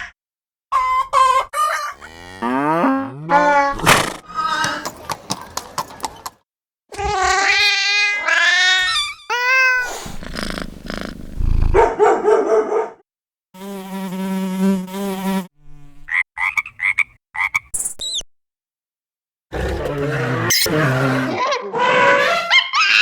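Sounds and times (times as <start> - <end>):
wavering animal-like calls: 20.4 - 21.4.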